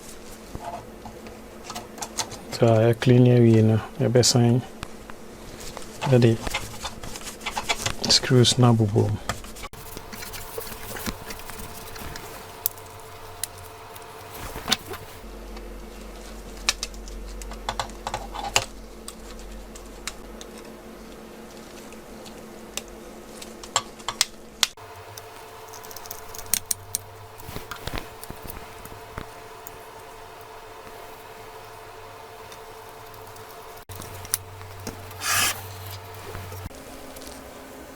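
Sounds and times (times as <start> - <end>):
faint steady hum: 0.0 - 37.9
deeper hum: 9.7 - 21.0, 24.8 - 37.9.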